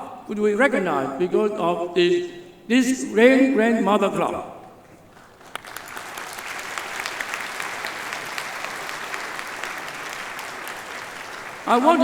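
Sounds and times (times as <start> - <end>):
audience applauding: 5.2 - 12.0.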